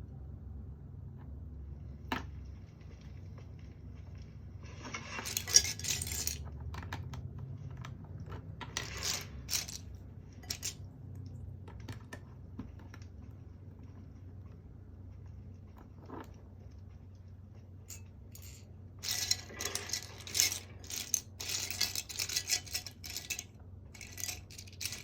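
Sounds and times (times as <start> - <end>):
small hard objects clattering: 2.6 - 6.7, 8.6 - 10.8, 17.9 - 25.0
steady low hum: 7.3 - 25.0.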